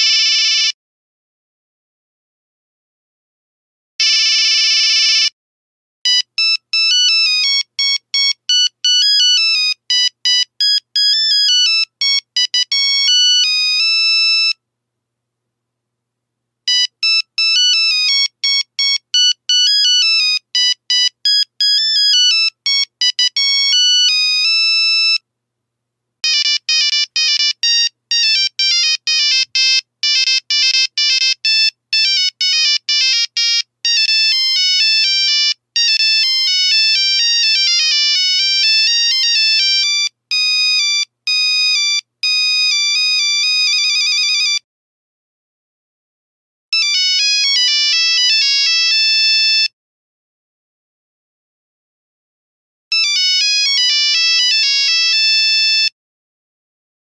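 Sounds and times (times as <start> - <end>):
monophonic ringtone beeping: 16.7 - 25.2.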